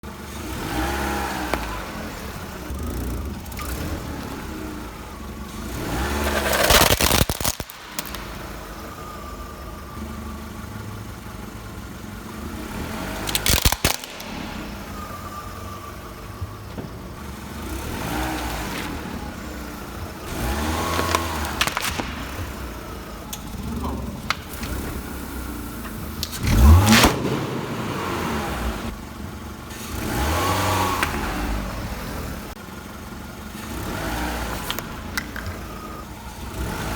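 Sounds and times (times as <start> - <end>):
car engine revving: 0.0 - 36.9
tyre crushing objects: 5.8 - 8.4, 20.2 - 23.0.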